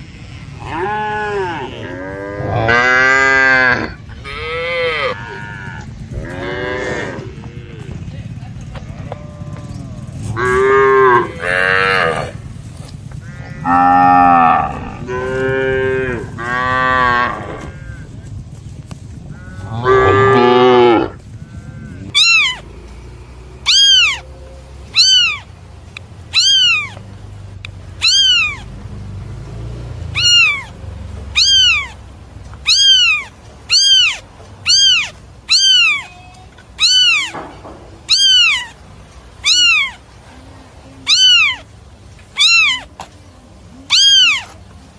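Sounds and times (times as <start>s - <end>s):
cattle mooing: 0.0s - 8.2s, 9.0s - 12.5s, 13.2s - 18.2s, 19.3s - 25.6s
cat meowing: 21.9s - 22.8s, 23.6s - 24.3s, 24.9s - 25.5s, 26.3s - 27.0s, 28.0s - 28.7s, 30.0s - 30.8s, 31.4s - 32.0s, 32.6s - 38.8s, 39.4s - 40.0s, 41.0s - 41.7s, 42.4s - 43.1s, 43.9s - 44.6s.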